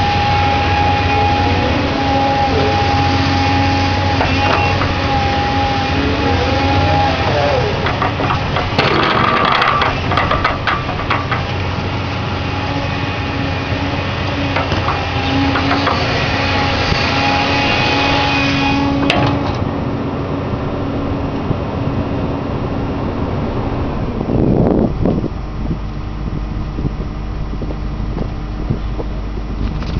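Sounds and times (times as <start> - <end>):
gliding whine: 0.0 - 29.8
excavator engine and hydraulics: 0.0 - 29.9
knocks and rattles: 4.2 - 5.3, 7.6 - 12.0, 14.4 - 17.4, 19.0 - 19.7.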